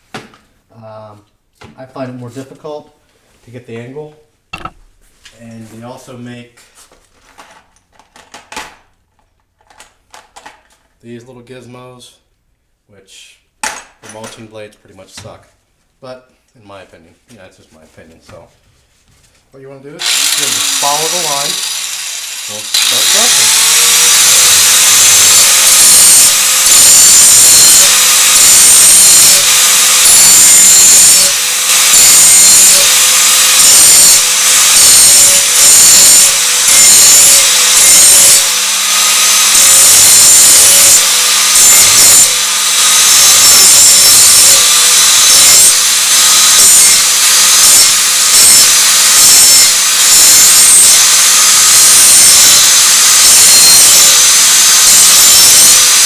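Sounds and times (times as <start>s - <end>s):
angle grinder grinding metal: 4.6s - 4.8s, 20.0s - 56.0s
grinder motor hum: 20.0s - 56.0s.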